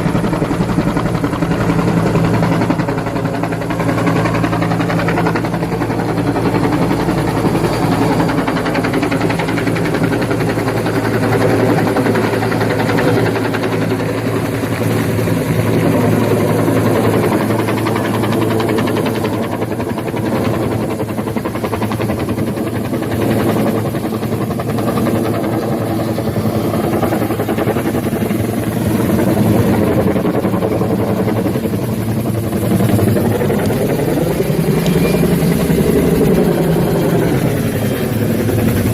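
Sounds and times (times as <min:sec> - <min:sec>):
helicopter rotor drone: 0:00.0 - 0:38.9.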